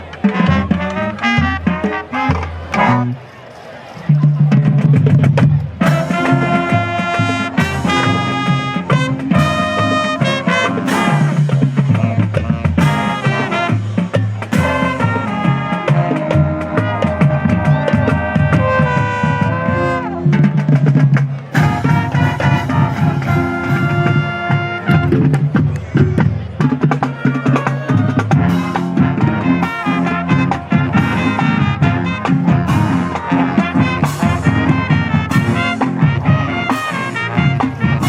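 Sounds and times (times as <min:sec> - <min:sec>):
marching drums: 0:00.0 - 0:03.1, 0:04.1 - 0:38.0
brass section playing: 0:00.0 - 0:03.3, 0:05.8 - 0:25.6, 0:26.6 - 0:38.0.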